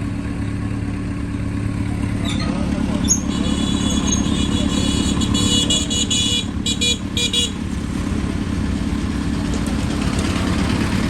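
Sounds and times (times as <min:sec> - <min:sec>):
engine running: 0:00.0 - 0:11.0
high-pitched vehicle horn: 0:03.0 - 0:07.6.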